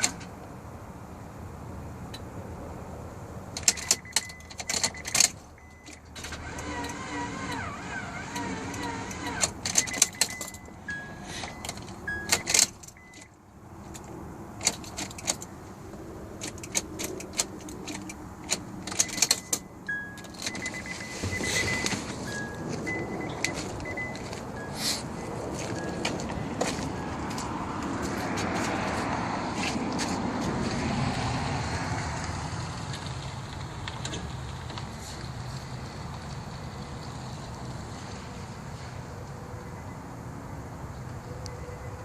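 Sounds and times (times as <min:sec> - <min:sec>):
short high beeps: 0:09.8 - 0:13.3, 0:19.0 - 0:26.0.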